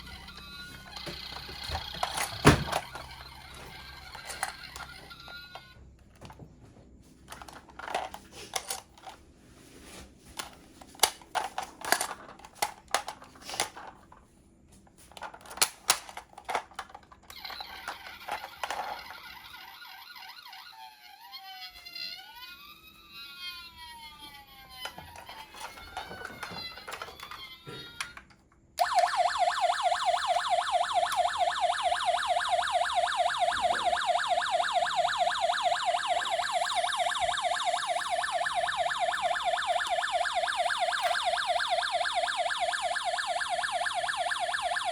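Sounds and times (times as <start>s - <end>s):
toy electronic siren wailing: 0.0s - 5.8s, 16.8s - 28.2s, 28.8s - 44.9s
toy cars clicking and knocking: 0.0s - 6.4s, 7.3s - 9.2s, 10.3s - 14.3s, 15.0s - 19.7s, 24.7s - 34.2s.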